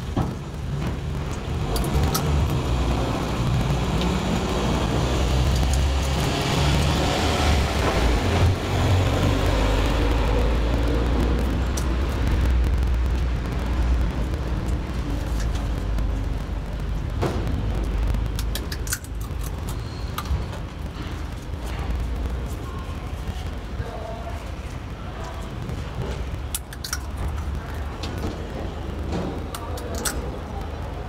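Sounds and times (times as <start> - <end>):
street traffic rumble: 0.0 - 31.0
vehicle passing close: 1.2 - 21.0.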